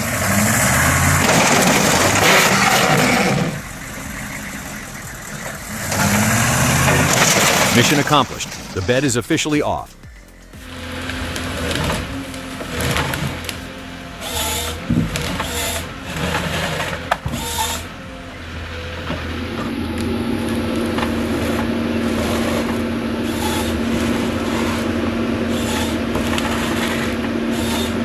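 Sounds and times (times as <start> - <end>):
machinery clatter and knocks: 0.0 - 8.8, 10.1 - 17.9
steady engine hum: 0.0 - 28.0.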